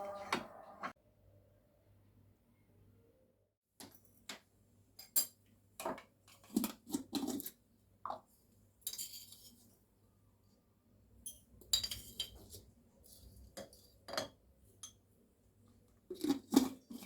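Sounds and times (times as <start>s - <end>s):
dishes and utensils clinking: 11.3s - 12.6s.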